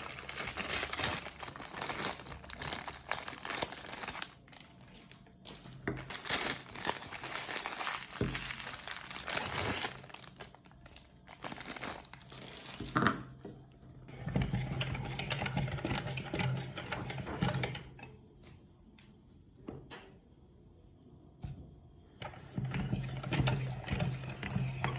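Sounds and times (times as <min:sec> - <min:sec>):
crinkling and crackling: 0:00.0 - 0:18.6
meat grinder motor humming: 0:14.1 - 0:17.8.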